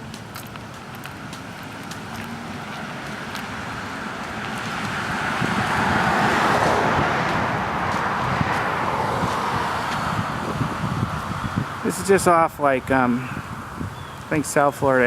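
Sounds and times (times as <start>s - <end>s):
car passing by: 1.3s - 12.1s.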